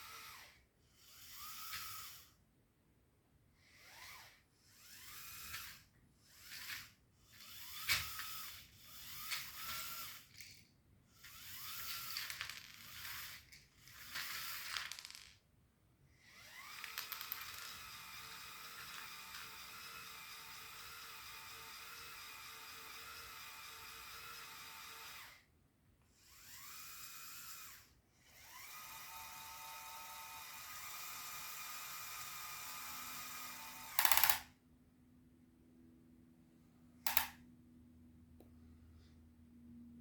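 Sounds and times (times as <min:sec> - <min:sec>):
small electric motors whirring: 0:00.0 - 0:02.4, 0:03.7 - 0:14.9, 0:16.2 - 0:25.4, 0:26.1 - 0:34.4
sharp click: 0:37.1 - 0:37.4.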